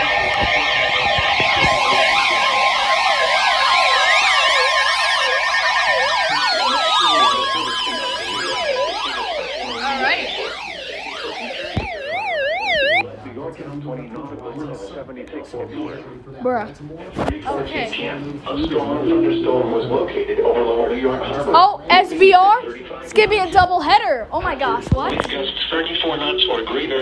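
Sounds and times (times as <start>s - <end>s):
sirens wailing: 0.0s - 13.0s, 18.5s - 20.8s.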